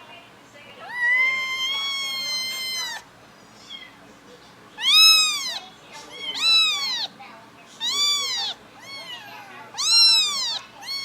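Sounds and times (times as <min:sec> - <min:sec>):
kittens meowing: 0:00.8 - 0:04.0, 0:04.8 - 0:07.2, 0:07.8 - 0:11.0.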